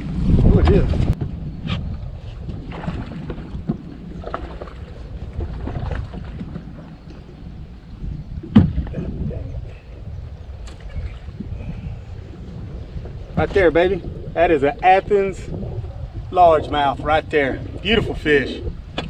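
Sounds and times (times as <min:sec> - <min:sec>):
wind rumbling on microphone: 0:00.0 - 0:19.0
loud thump: 0:08.5 - 0:08.9.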